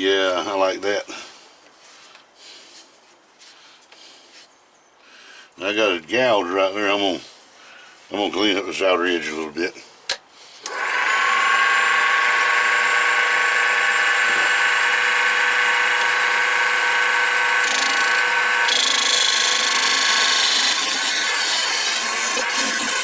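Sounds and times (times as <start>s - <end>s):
wood lathe motor whine: 10.6s - 23.0s
gouge scraping spinning wood: 10.7s - 23.0s.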